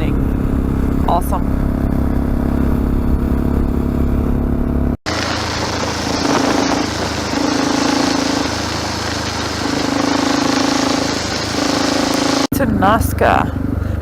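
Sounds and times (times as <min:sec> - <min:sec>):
motorcycle engine running: 0:00.0 - 0:14.0
wind rush: 0:05.1 - 0:12.5.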